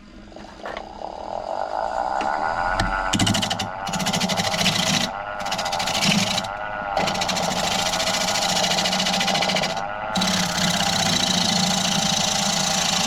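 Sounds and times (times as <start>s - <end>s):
lathe motor hum: 0.7s - 13.0s.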